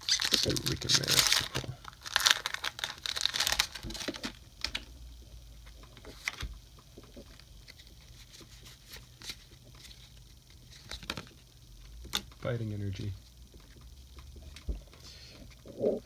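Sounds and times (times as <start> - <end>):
foil wrapper crinkling: 0.0 - 4.9.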